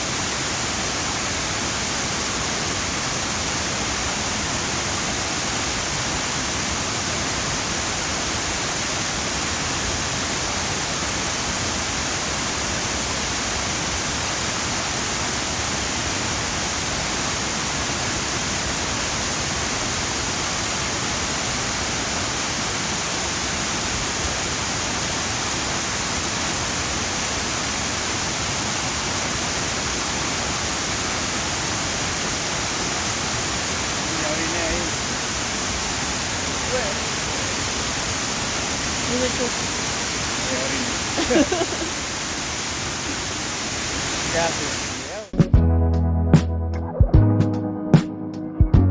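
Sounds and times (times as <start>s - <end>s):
waterfall roaring: 0.0s - 45.3s.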